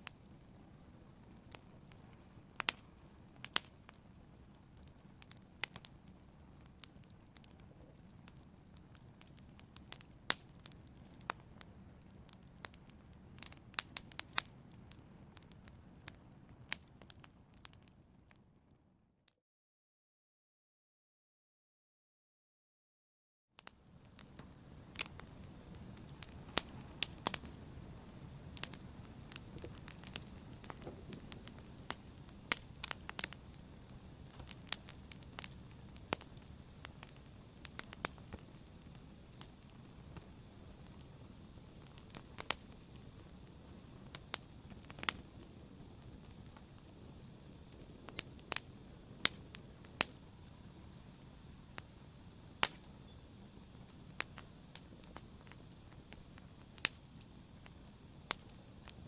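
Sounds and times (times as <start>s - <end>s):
fire crackling and popping: 0.0s - 18.8s, 23.6s - 59.0s.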